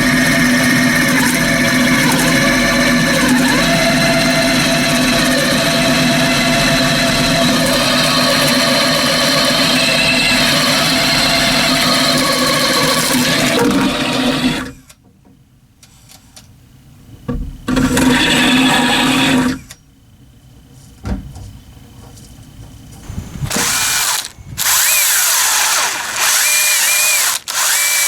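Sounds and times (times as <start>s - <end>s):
power drill boring into wood: 0.0s - 14.8s, 17.9s - 19.6s, 23.4s - 28.0s.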